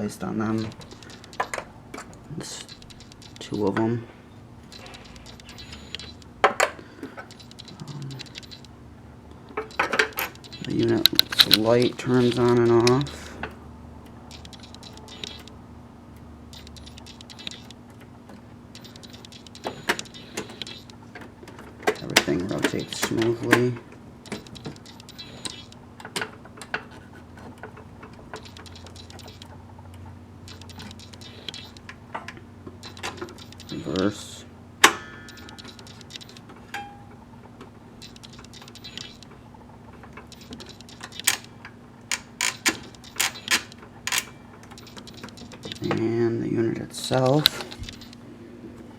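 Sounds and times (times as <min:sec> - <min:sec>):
faint steady hum: 0:00.0 - 0:48.9
sewing machine mechanism clicking: 0:09.5 - 0:13.3, 0:14.2 - 0:15.6, 0:18.7 - 0:26.8, 0:28.1 - 0:29.6, 0:30.5 - 0:32.0, 0:32.8 - 0:34.1, 0:35.3 - 0:36.6, 0:40.2 - 0:46.1.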